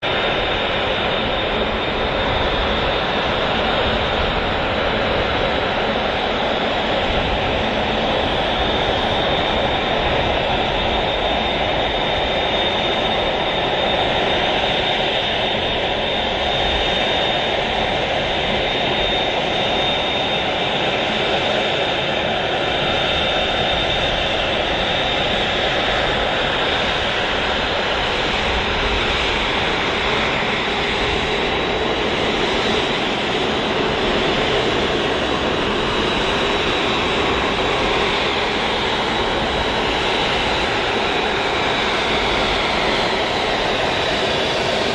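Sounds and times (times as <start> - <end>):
high steady engine whine: 0.0 - 44.9
jet engines running: 0.0 - 44.9.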